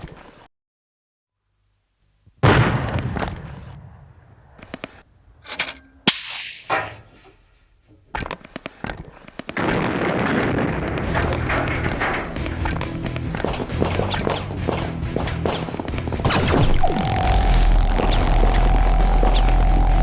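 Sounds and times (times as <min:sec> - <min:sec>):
heavy blast with rumbling tail: 0:02.4 - 0:04.6, 0:09.6 - 0:13.5
gunshot-like cracks: 0:02.4 - 0:05.0, 0:09.6 - 0:12.8
dense steady din: 0:09.6 - 0:20.0.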